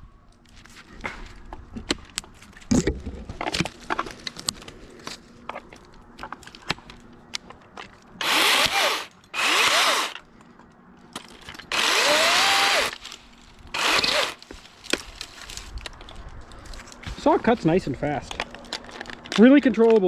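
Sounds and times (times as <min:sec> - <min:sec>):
battery chainsaw cutting limbs: 0:08.2 - 0:10.2, 0:11.7 - 0:14.5.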